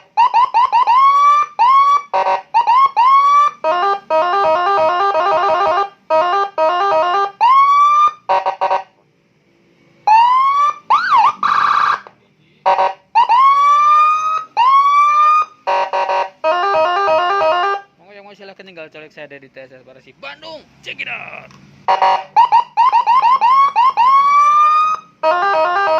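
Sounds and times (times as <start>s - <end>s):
escort siren cycling tones: 0.0s - 8.9s, 10.0s - 12.1s, 12.7s - 17.9s, 21.9s - 25.9s.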